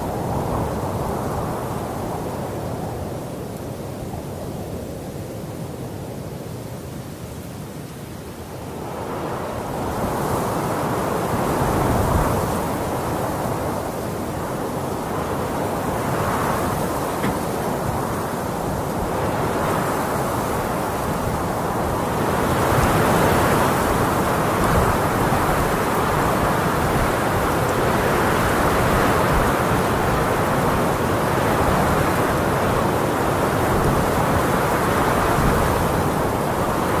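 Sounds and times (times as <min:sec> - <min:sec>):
blizzard wind rushing: 0:08.5 - 0:37.0.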